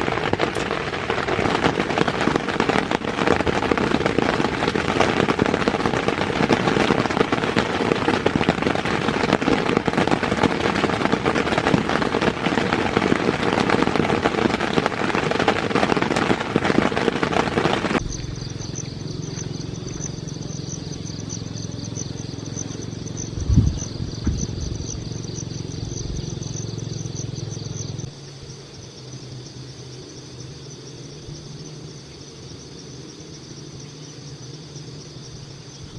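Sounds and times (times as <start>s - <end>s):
heavy rain on a tent: 0.0s - 28.4s
insects trilling: 0.0s - 35.9s
low hum: 18.0s - 28.1s
thump: 23.4s - 24.6s.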